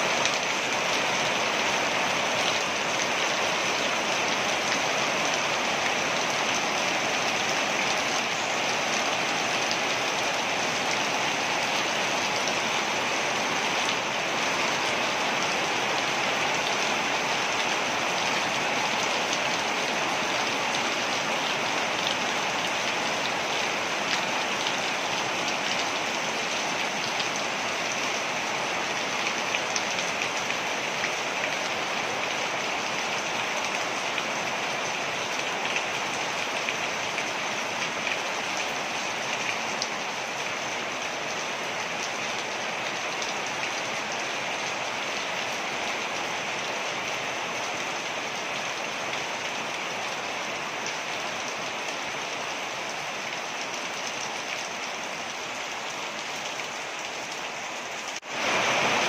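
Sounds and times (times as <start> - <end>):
waterfall rushing: 0.0 - 32.6, 57.3 - 59.0.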